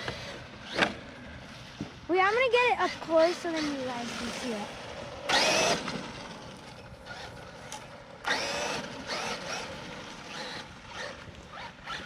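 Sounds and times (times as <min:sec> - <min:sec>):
toy car electric motor whining: 0:05.3 - 0:06.4, 0:07.0 - 0:07.6, 0:08.2 - 0:12.0.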